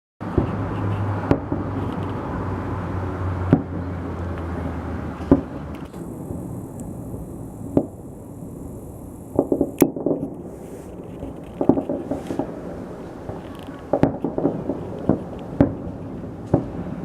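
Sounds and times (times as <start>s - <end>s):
firework bangs: 0.2s - 1.8s, 9.2s - 17.0s
clusters of firework cracks: 5.2s - 17.0s
steady low rumble: 5.9s - 13.4s.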